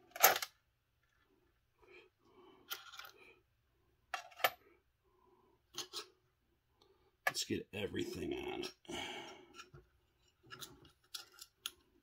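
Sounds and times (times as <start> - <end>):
small metal parts rattling: 9.6 - 11.8.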